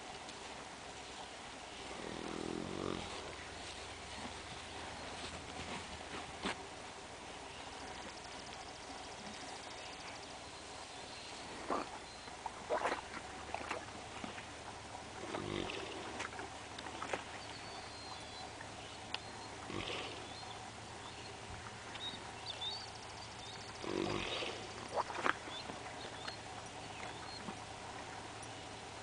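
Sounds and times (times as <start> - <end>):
horse snoring: 1.7 - 3.6, 11.6 - 12.0, 15.2 - 16.3, 19.6 - 20.4, 23.7 - 25.4.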